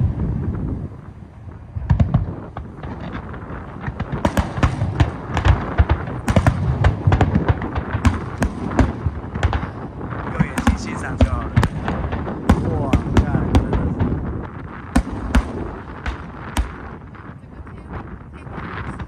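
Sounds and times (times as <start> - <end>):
fireworks bangs and crackles: 0.0 - 19.0
low rumble: 4.0 - 19.0.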